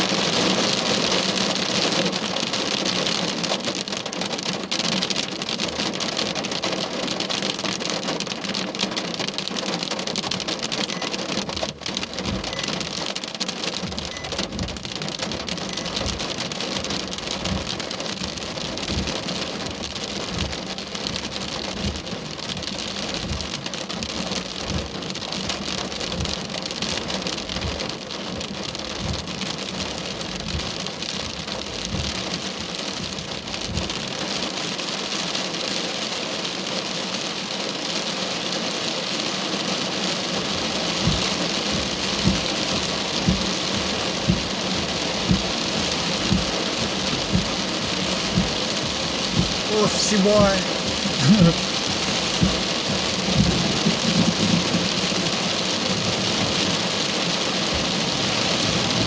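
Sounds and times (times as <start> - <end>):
heavy rain falling: 0.0 - 59.0
soft low thumps: 11.5 - 13.0, 13.7 - 34.1, 40.6 - 54.9.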